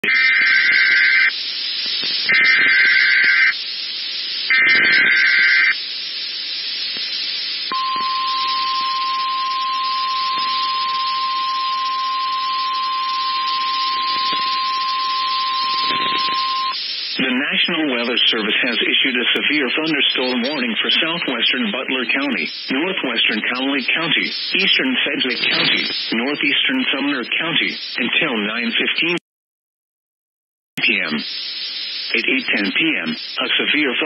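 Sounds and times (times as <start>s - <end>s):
radio hiss: 0.0s - 29.2s, 30.8s - 34.0s
steady single-pitch alert tone: 7.7s - 16.8s
warbling digital header bursts: 13.2s - 17.5s.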